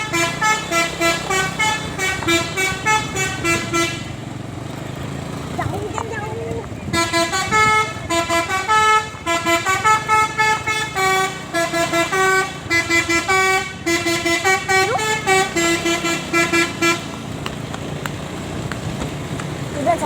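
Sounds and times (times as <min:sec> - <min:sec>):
musical air horn playing tune: 0:00.0 - 0:04.2, 0:06.9 - 0:17.2.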